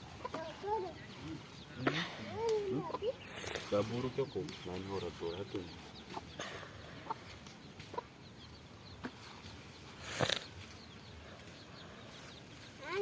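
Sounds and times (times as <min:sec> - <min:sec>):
chickens clucking: 0:00.0 - 0:13.0.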